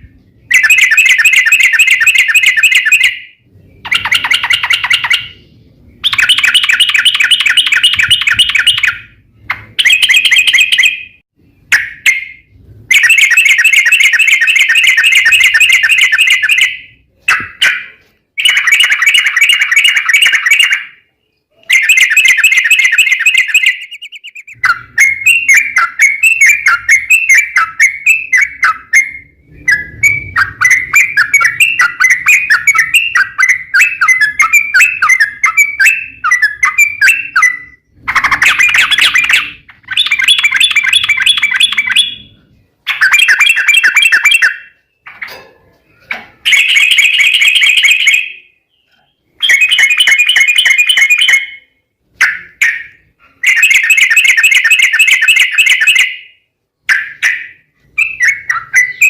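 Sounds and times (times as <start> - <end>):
bird trilling: 0.0 - 45.4, 46.4 - 59.0
bubbly bird chirps: 3.7 - 20.9, 21.6 - 45.0.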